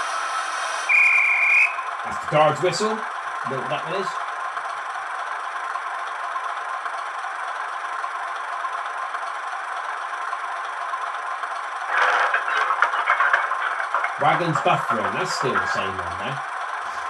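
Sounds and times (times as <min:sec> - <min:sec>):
rattling diesel engine through small speaker: 0:02.1 - 0:17.0.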